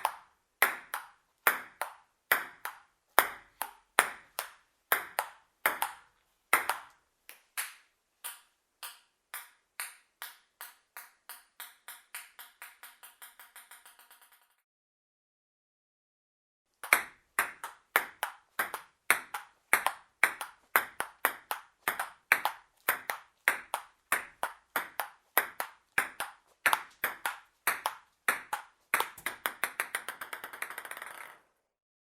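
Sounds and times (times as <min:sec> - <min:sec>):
ping-pong ball clicks: 0:00.0 - 0:14.6, 0:16.8 - 0:31.5.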